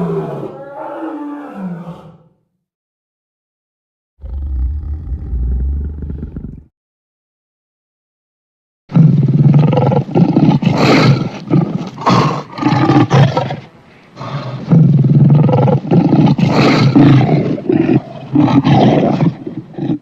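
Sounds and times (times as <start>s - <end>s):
monster roars: 4.2s - 6.7s.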